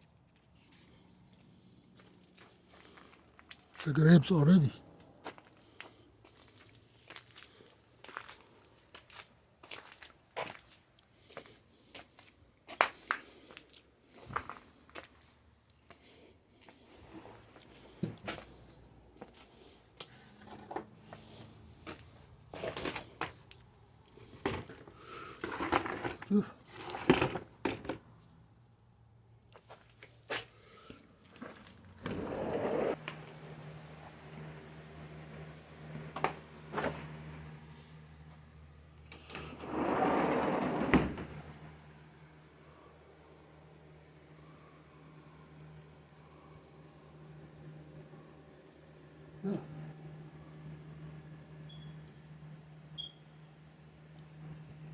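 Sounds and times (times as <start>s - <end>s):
scraping sliding rub: 32.0s - 33.0s, 39.2s - 41.2s.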